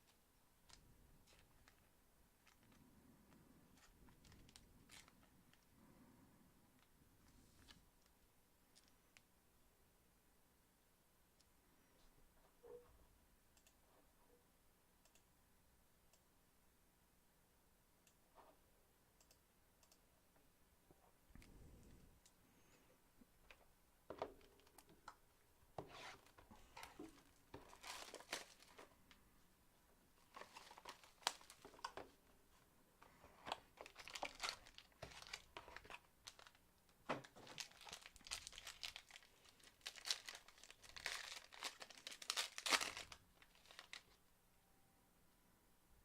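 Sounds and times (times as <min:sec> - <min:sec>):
plastic wrapping crinkling and tearing: 0:26.6 - 0:28.9, 0:30.2 - 0:32.0, 0:33.4 - 0:36.6, 0:37.2 - 0:44.2.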